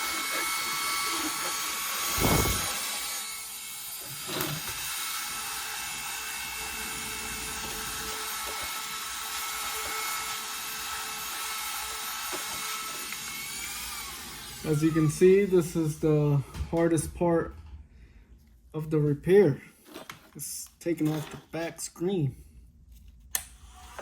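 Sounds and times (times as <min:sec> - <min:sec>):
hand tool scraping: 0:00.0 - 0:03.3, 0:03.9 - 0:05.0, 0:06.0 - 0:15.8, 0:19.8 - 0:21.7
small motor running: 0:00.0 - 0:15.2.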